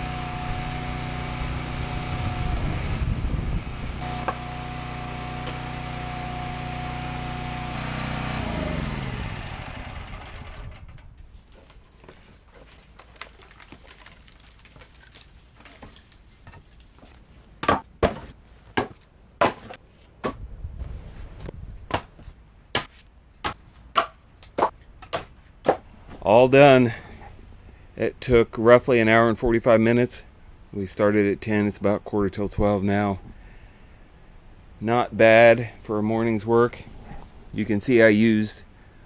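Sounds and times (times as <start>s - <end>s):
log splitter engine whining: 0.0s - 17.8s
sharp wooden knocks: 17.6s - 20.4s, 22.8s - 25.8s.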